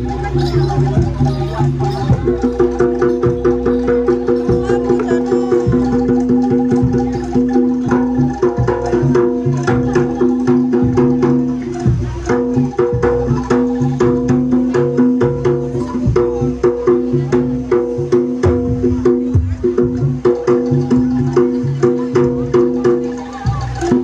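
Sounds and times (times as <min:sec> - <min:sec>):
pitched gongs playing: 0:00.0 - 0:09.5
drumming: 0:00.0 - 0:24.0.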